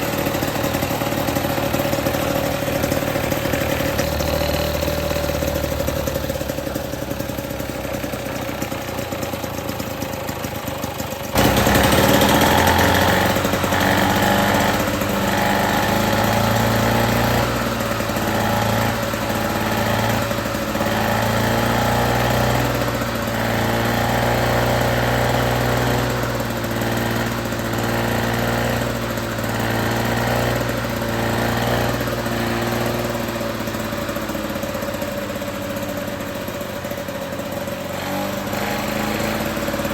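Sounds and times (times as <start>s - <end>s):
lawn mower engine running unevenly: 0.0s - 39.9s.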